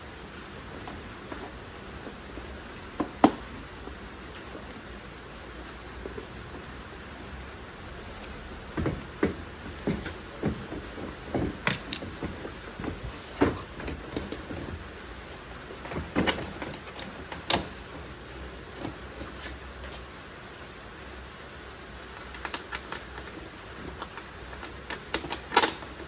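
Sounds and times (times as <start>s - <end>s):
steady low hiss: 0.0s - 26.0s
tools and parts knocking: 8.7s - 14.8s.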